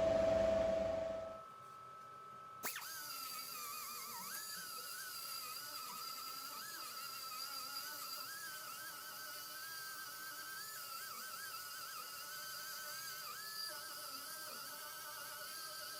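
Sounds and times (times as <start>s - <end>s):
fan humming: 0.0s - 1.4s.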